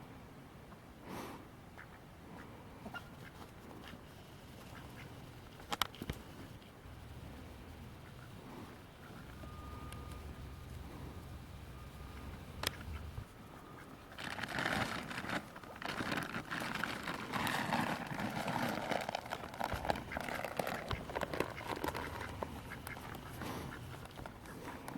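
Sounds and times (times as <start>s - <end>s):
plastic bag crinkling: 14.1s - 24.9s.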